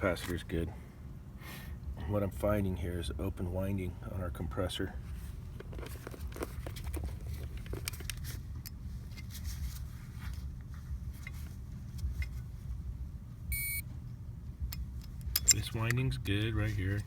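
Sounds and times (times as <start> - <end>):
air conditioner fan humming: 0.0 - 17.0
light clicks and taps of handling: 5.6 - 9.4
short electronic beep: 13.5 - 13.8.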